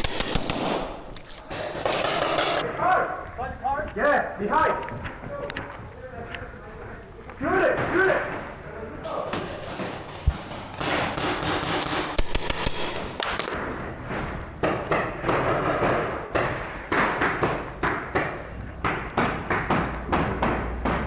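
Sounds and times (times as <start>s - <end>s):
paintball markers firing: 0.0s - 2.7s, 10.2s - 13.6s.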